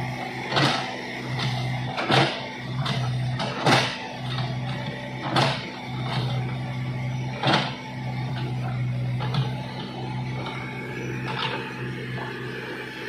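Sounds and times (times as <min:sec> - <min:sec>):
low sustained tone: 0:04.2 - 0:13.0.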